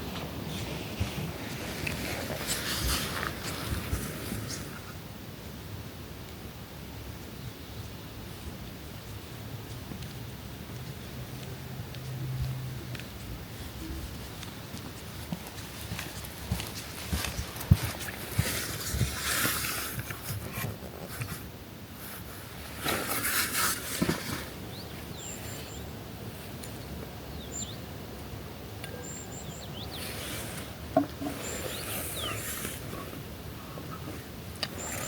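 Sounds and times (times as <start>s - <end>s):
footsteps crunching on forest trail: 9.1s - 21.4s
small birds chirping: 24.7s - 27.9s, 28.7s - 35.0s.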